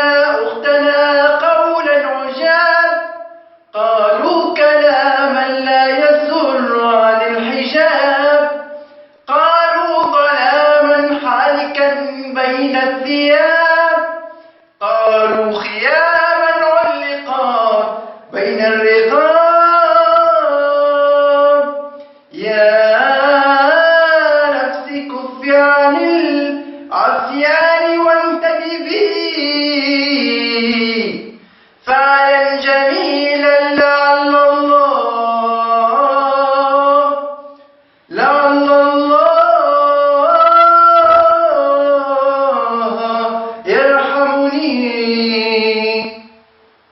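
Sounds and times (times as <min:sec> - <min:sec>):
person singing unaccompanied: 0:00.0 - 0:46.4
singer breathing in: 0:08.8 - 0:09.2, 0:14.3 - 0:14.8, 0:22.0 - 0:22.3, 0:31.4 - 0:31.8, 0:37.6 - 0:38.1.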